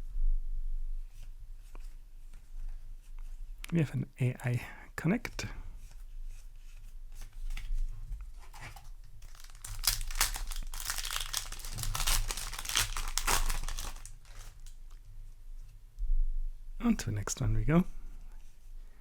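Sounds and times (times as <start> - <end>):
foil wrapper tearing and crinkling: 8.5 - 15.0.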